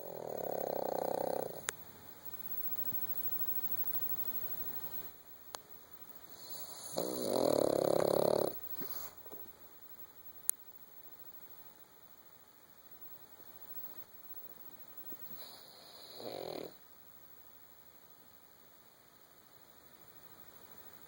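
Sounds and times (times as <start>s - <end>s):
puppy snoring: 0.0s - 1.7s, 6.3s - 9.5s, 15.2s - 16.8s
puppy snuffles: 6.4s - 9.4s.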